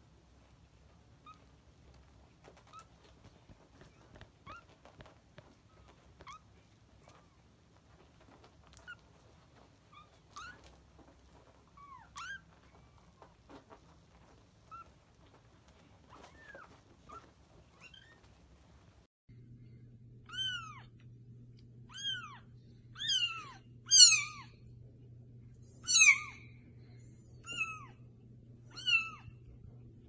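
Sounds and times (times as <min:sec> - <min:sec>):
kittens mewing: 0:01.0 - 0:18.8.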